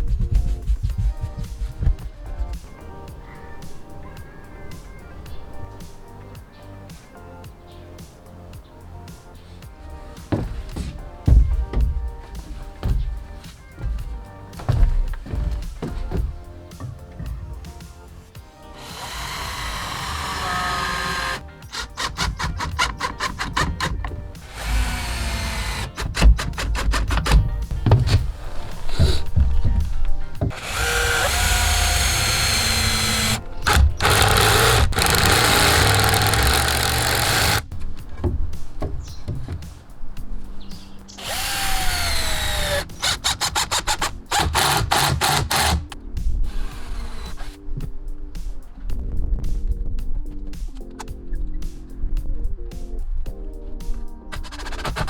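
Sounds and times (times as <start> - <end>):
background music: 0.0 - 55.0
wood being sawn: 9.1 - 38.4, 41.2 - 45.9
power drill driving into wood: 18.7 - 27.4, 30.4 - 37.6, 41.2 - 45.9.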